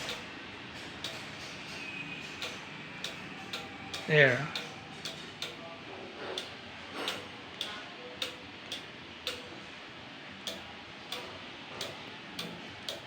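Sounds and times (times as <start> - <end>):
light sharp ticks: 10.5 - 11.2.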